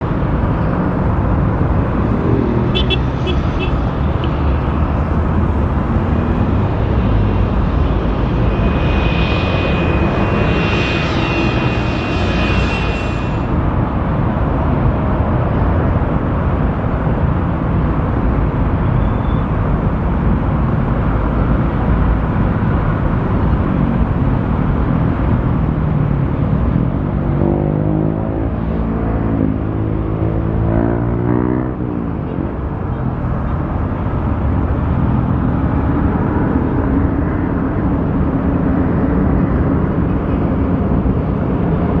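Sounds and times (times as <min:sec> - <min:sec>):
jet engines rumbling: 0:00.0 - 0:18.8
wavering pitched sound: 0:06.7 - 0:13.6.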